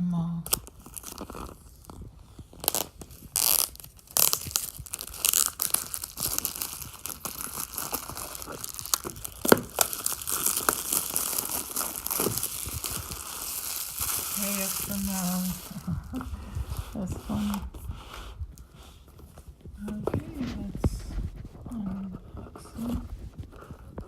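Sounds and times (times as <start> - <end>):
box packaging tearing and crinkling: 0.5 - 17.8.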